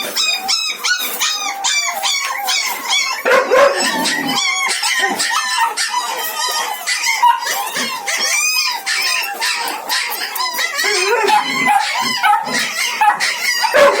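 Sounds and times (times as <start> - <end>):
puppies yapping and whining: 0.0 - 14.0.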